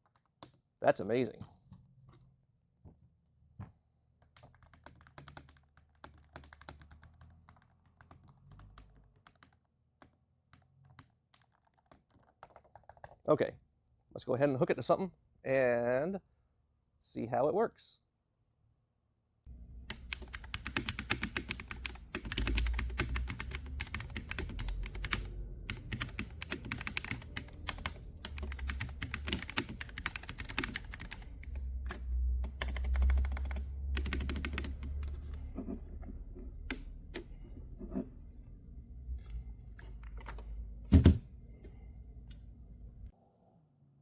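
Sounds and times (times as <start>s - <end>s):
keyboard typing: 4.2s - 13.2s, 19.9s - 35.2s.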